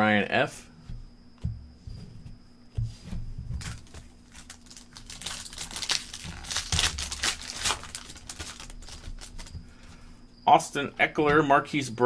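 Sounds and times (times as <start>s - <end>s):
foil wrapper crinkling and tearing: 3.6s - 9.6s.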